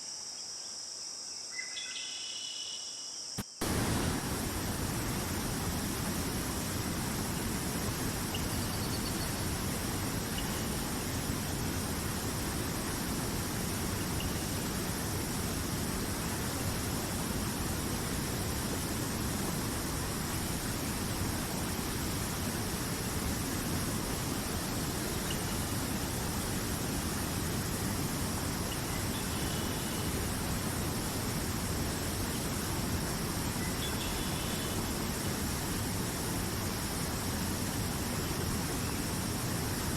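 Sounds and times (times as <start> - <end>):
river water rushing: 3.6 - 28.9.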